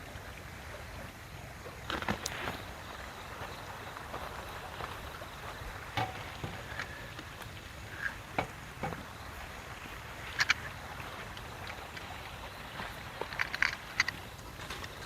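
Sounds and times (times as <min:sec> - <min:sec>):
sharp knocks and clicks: 0:06.0 - 0:06.7.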